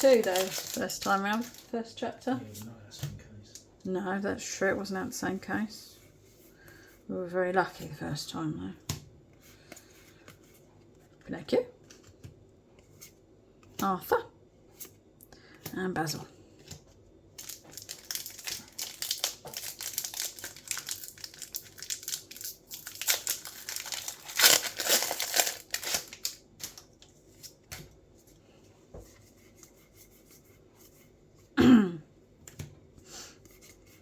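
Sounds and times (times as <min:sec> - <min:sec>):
foil wrapper crinkling: 0:00.0 - 0:01.7, 0:17.3 - 0:27.1.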